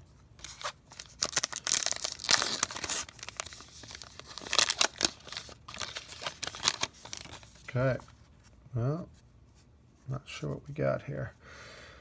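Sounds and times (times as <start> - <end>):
wrapper tearing and crinkling: 0.4 - 7.8.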